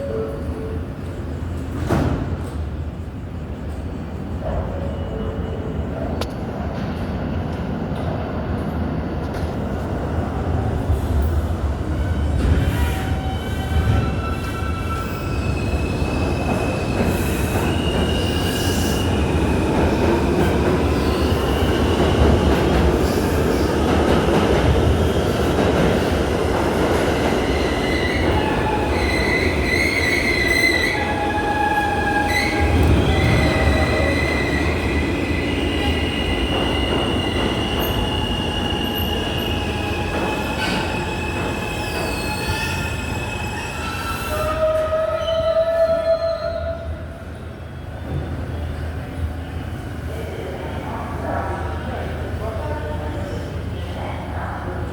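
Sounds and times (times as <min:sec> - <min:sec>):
subway train rumbling: 0:00.0 - 0:54.9
train wheels squealing: 0:12.0 - 0:19.7, 0:27.2 - 0:48.9.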